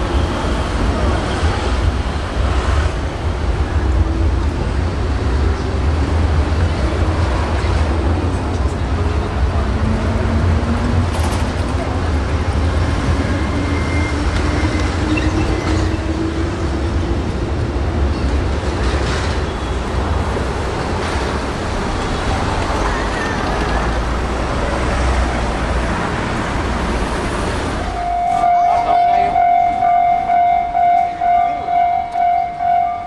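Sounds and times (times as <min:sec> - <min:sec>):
road traffic rumble: 0:00.0 - 0:33.0.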